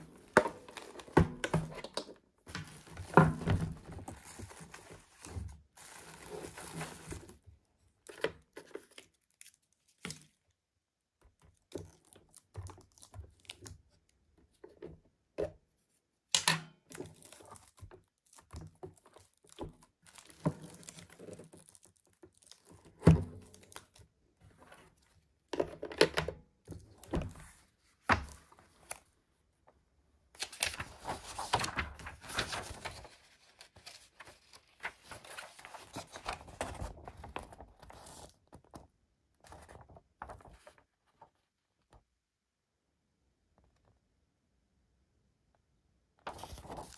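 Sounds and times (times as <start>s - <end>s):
plastic and cardboard crinkling: 0.0s - 10.4s, 16.9s - 26.0s, 30.4s - 41.5s, 46.3s - 46.9s.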